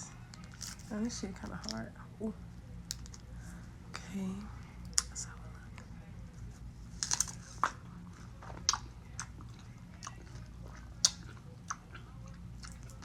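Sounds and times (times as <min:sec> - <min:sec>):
strawberry being bitten and chewed: 0:06.5 - 0:13.0.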